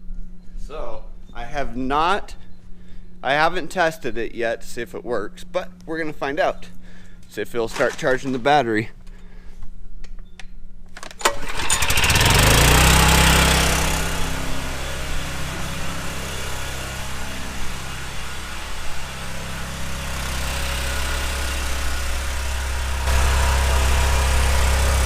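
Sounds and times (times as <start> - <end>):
generator engine running: 11.2 - 25.0.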